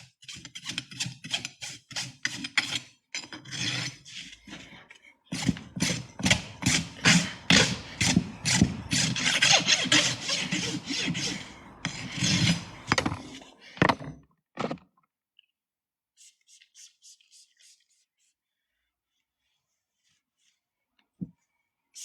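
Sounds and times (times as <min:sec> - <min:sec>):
hoof rasp filing hoof: 0:00.0 - 0:14.0.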